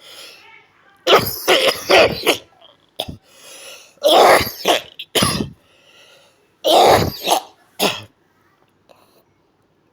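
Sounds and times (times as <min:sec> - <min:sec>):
person coughing: 0:01.1 - 0:03.2, 0:04.0 - 0:05.6, 0:06.7 - 0:08.1.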